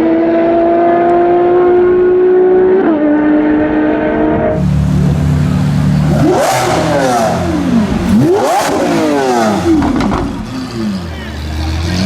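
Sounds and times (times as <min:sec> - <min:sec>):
car engine revving: 0:04.6 - 0:12.0.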